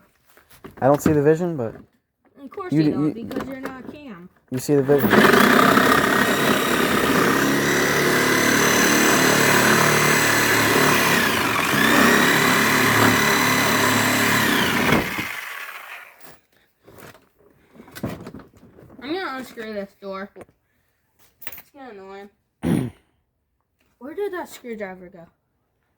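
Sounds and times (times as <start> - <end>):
electric saw cutting plastic: 4.7 - 16.3.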